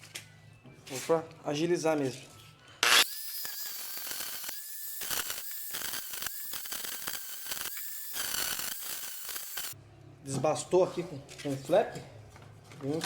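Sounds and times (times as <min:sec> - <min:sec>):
angle grinder grinding metal: 0:02.8 - 0:09.8.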